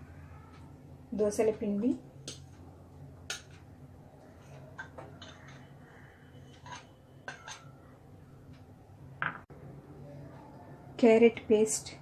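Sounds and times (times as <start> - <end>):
utensil clinking against bowl: 6.6 - 7.7.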